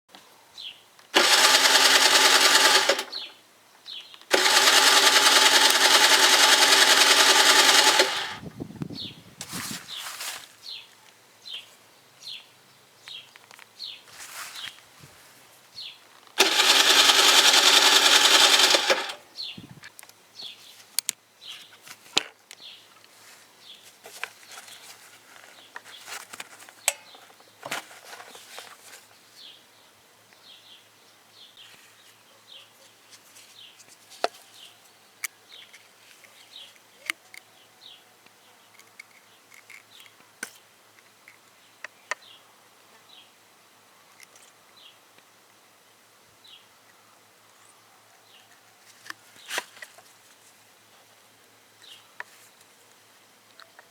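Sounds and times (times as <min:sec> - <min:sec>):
sharp clicks: 0:01.1 - 0:03.3, 0:04.2 - 0:08.4, 0:16.4 - 0:19.2
scooter starter cranking engine: 0:01.2 - 0:03.3, 0:04.3 - 0:08.5, 0:16.4 - 0:19.2.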